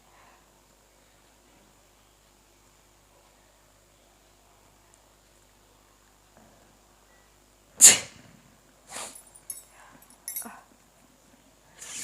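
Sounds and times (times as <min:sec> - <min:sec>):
small scratchy sounds: 0:11.7 - 0:12.0.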